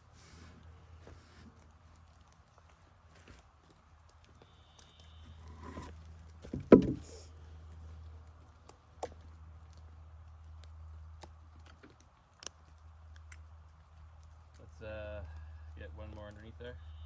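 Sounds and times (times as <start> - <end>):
low steady hum: 0.0 - 17.0
light wooden knocks: 5.5 - 7.2
heavy wooden block knock: 6.5 - 7.2.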